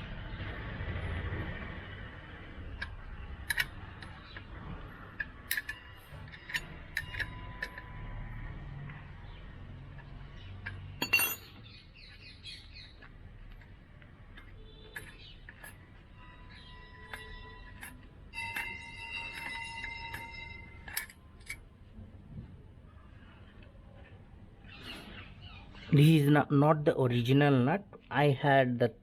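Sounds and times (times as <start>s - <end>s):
metal clatter: 2.7s - 8.0s, 9.9s - 12.2s, 12.8s - 21.6s
spanner clinking on metal: 2.8s - 8.0s, 9.9s - 21.6s.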